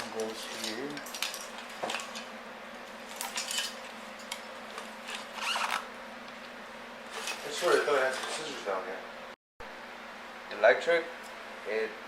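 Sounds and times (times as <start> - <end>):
wires rustling and scraping: 0.0 - 8.6.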